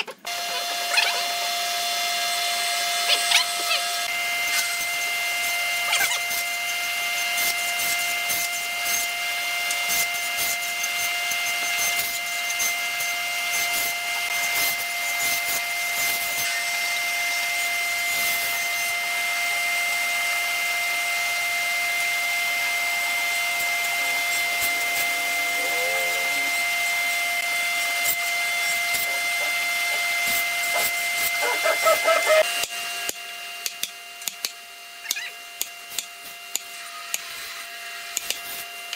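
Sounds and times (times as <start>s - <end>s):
power tool whining: 0.0s - 38.9s.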